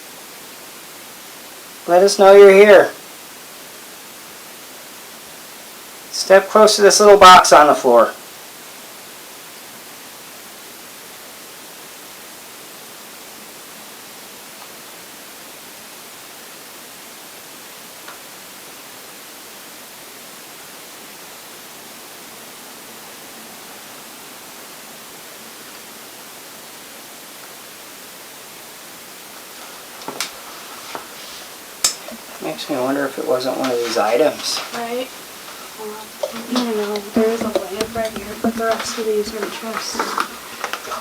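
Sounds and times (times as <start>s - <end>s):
static hiss: 0.0s - 41.0s
sharp knocks: 35.6s - 41.0s.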